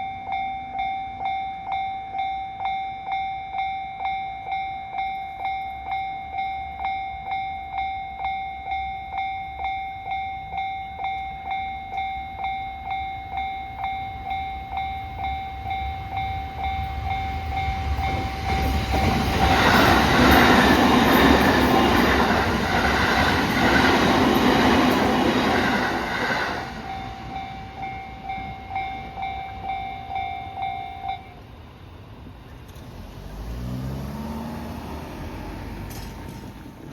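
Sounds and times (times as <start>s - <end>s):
level crossing warning bell: 0.0s - 32.0s
train rumbling over rails: 8.6s - 36.9s.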